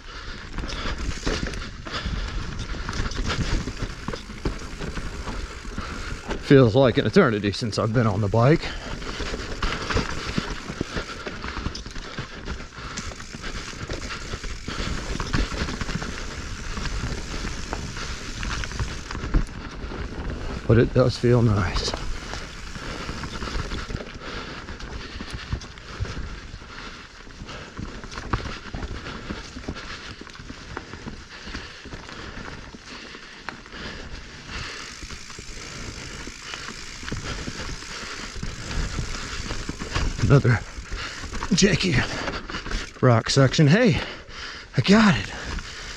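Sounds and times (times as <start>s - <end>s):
mountain bike tyre rush: 0.0s - 45.9s
bike knocking and rattling on rocks: 0.2s - 43.8s, 44.9s - 45.9s
bike clicks knocks and rattles: 0.5s - 6.4s, 9.0s - 20.3s.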